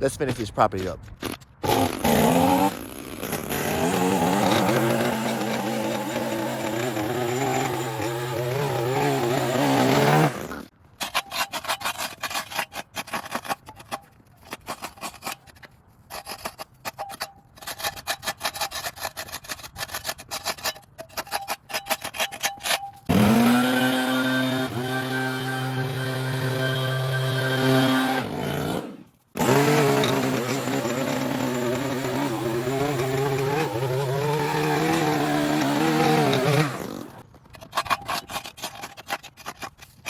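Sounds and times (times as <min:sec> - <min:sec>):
small petrol engine running: 0:01.6 - 0:10.7, 0:23.1 - 0:28.2, 0:28.8 - 0:37.2.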